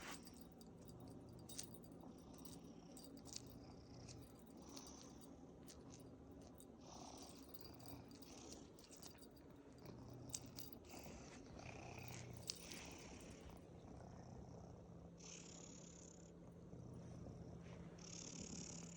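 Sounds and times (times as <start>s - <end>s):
cat purring: 0.0s - 18.9s.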